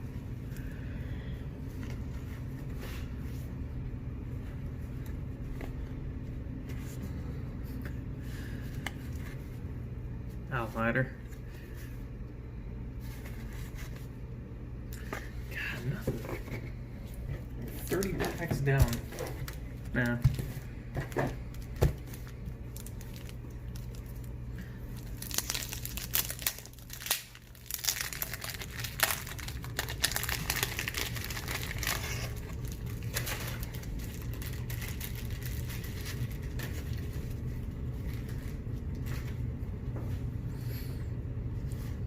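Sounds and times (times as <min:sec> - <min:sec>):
steady low hum: 0:00.0 - 0:42.0
paper wrappers crinkling and tearing: 0:17.7 - 0:20.7, 0:21.4 - 0:39.4.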